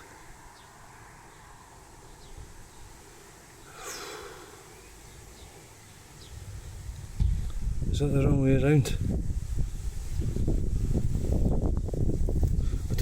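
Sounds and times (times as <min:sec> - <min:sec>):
faint outdoor background noise: 0:00.0 - 0:13.0
person breathing out through nose: 0:03.7 - 0:04.9.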